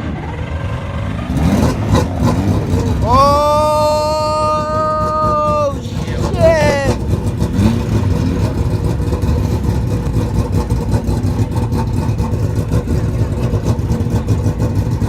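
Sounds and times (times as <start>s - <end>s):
race car engine idling: 0.0s - 15.0s.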